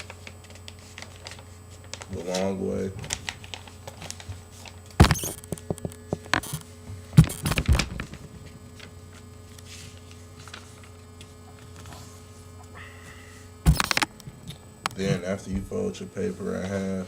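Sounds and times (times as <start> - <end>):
low electrical hum: 0.0 - 17.0.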